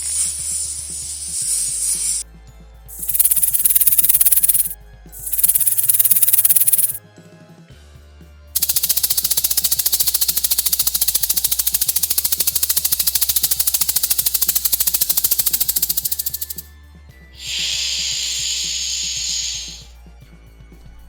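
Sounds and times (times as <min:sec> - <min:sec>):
snake rattling hiss: 0:00.0 - 0:02.2, 0:02.9 - 0:07.0, 0:08.6 - 0:16.7, 0:17.4 - 0:20.0
steady low hum: 0:02.9 - 0:07.0, 0:08.6 - 0:16.6.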